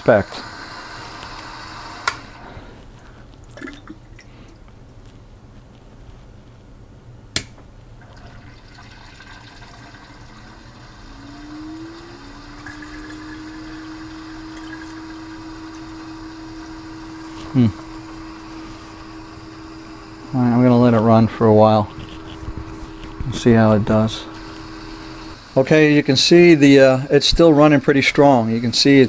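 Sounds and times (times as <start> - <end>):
water pump circulating coolant: 0.0 - 2.8, 8.0 - 29.0
sharp click: 7.3 - 7.6
pump hum rising in pitch: 8.1 - 25.6.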